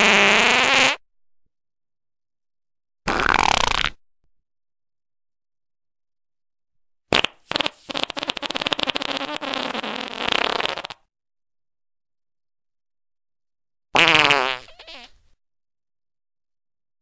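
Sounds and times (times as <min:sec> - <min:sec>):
fart sound effect: 0:00.0 - 0:01.0, 0:03.1 - 0:04.0, 0:07.1 - 0:11.1, 0:14.0 - 0:15.2.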